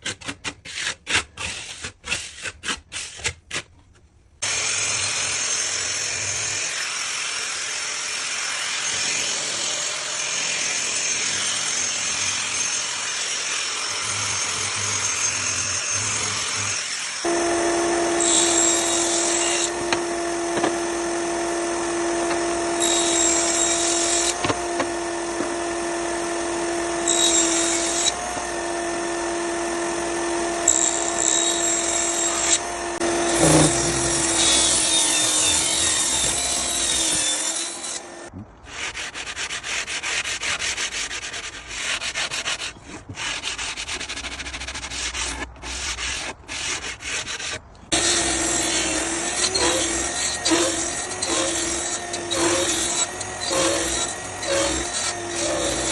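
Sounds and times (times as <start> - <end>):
power tool rasping on wood: 4.4 - 55.9
grinding: 11.3 - 38.3, 47.9 - 55.9
motor hum: 17.2 - 27.1.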